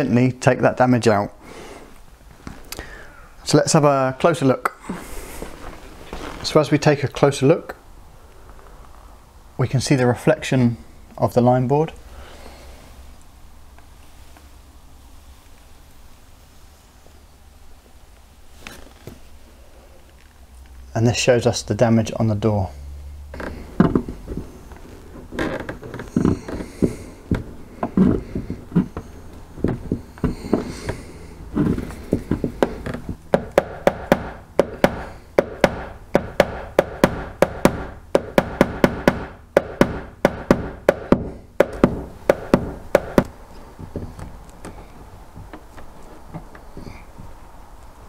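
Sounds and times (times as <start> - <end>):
hammer tapping steel panel: 31.6 - 43.4.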